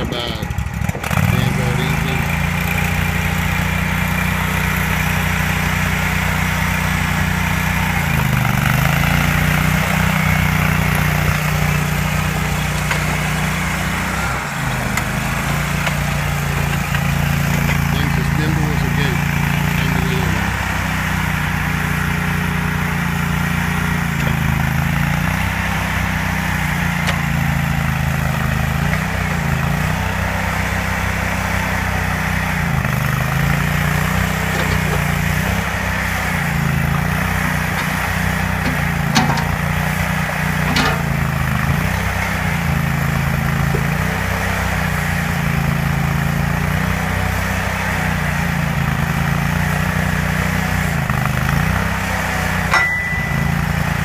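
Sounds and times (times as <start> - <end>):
gasoline engine running: 0.0 - 54.0
sharp metal clanks: 37.5 - 39.7, 52.7 - 53.9.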